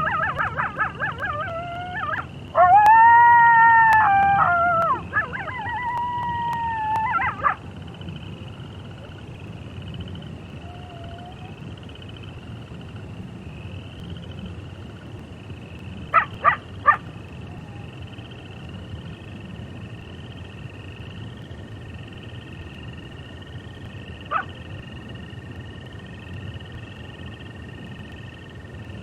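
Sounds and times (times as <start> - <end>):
coyote howling: 0.0 - 7.6, 10.5 - 11.6, 16.1 - 18.1, 24.3 - 24.5
crickets chirring: 0.0 - 29.0.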